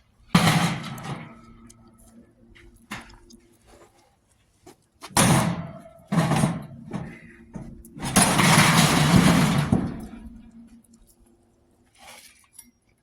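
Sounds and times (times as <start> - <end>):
scrap metal clattering crashes: 0.3 - 1.7, 5.1 - 10.7
scrap metal scraping: 5.2 - 10.6.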